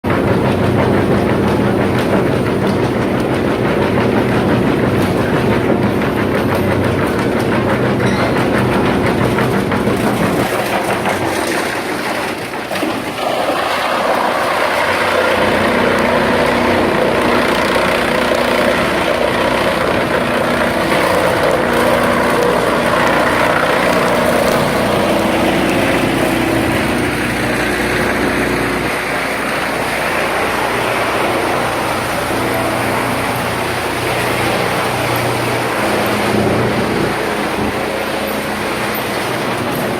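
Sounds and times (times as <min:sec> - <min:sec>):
loud noisy rush: 0:00.0 - 0:39.9
wood chipper humming: 0:00.0 - 0:39.9
dense rattling: 0:00.1 - 0:39.9.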